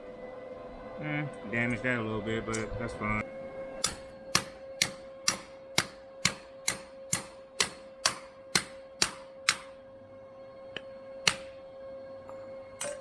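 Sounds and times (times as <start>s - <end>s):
cable cutter clicking: 3.8s - 9.7s, 11.2s - 11.5s.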